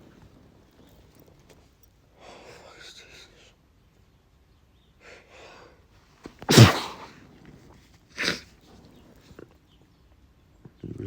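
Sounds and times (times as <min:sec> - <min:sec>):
man sneezing: 0:06.5 - 0:07.1, 0:08.2 - 0:08.5.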